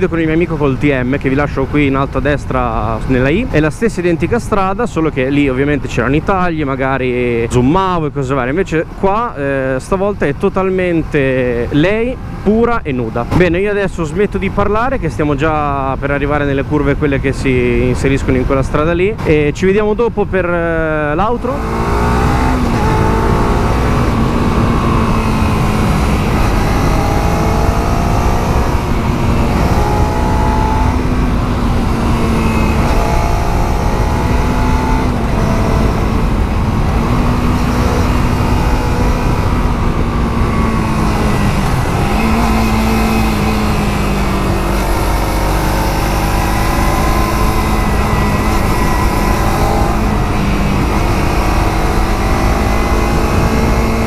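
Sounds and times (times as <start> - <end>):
motorcycle engine running: 22.4 - 54.0.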